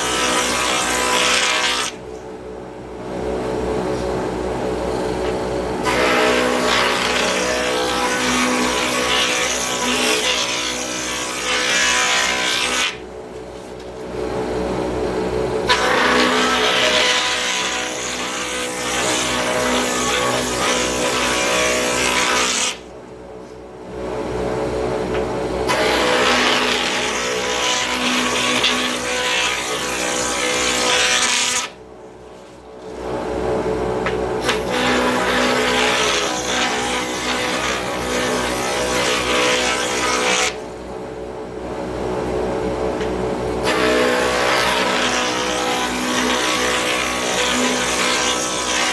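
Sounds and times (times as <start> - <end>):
router bit cutting wood: 5.8 - 13.0, 15.7 - 22.8, 25.7 - 31.8, 43.6 - 48.9.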